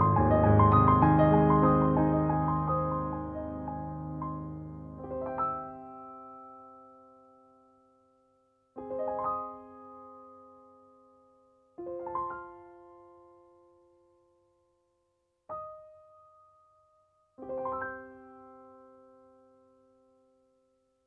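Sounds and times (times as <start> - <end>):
soft piano rolled chords: 0.0 - 7.2.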